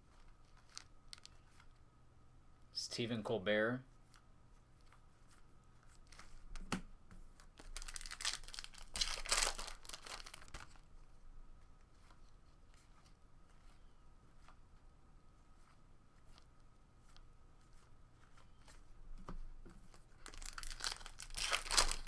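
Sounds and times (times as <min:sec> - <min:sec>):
card wrapper tearing and crinkling: 0:00.5 - 0:01.4, 0:07.6 - 0:10.8, 0:20.2 - 0:22.0.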